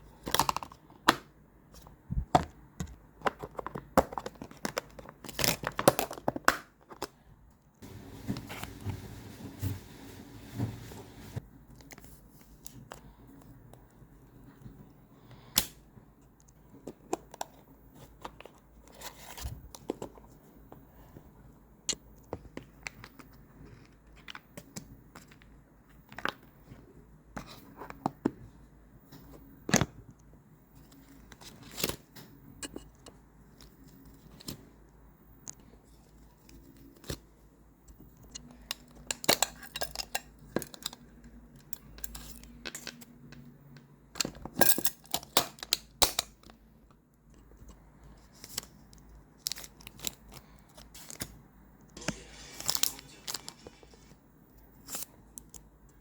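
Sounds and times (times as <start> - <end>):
plastic sleeves crinkling: 52.0 - 54.2.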